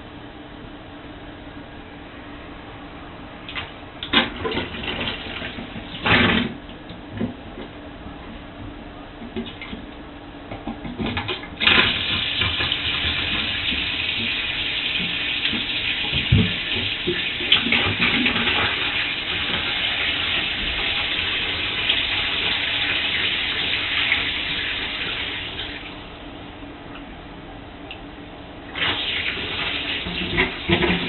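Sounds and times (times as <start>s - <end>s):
water running into bathtub: 4.1s - 6.6s, 11.1s - 26.0s, 28.7s - 31.0s.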